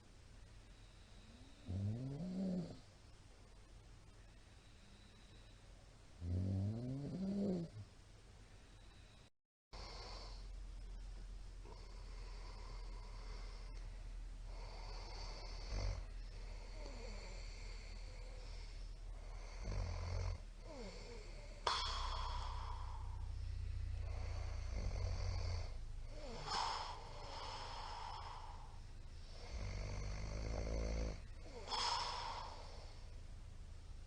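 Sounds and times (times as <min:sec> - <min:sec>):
man snoring: 0:01.2 - 0:02.8, 0:06.2 - 0:07.8, 0:14.5 - 0:23.2, 0:24.0 - 0:33.1.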